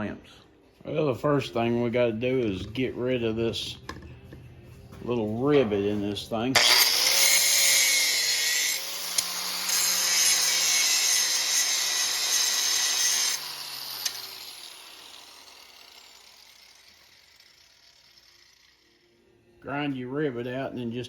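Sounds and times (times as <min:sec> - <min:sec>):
grinder grinding metal: 0:05.1 - 0:19.2
grinder wheel winding down: 0:06.5 - 0:19.2.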